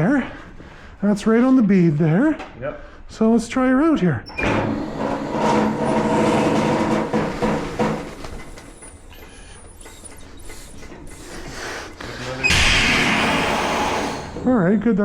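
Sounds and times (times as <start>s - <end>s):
tire changer working noises: 4.3s - 14.5s
loud hiss: 11.6s - 14.5s.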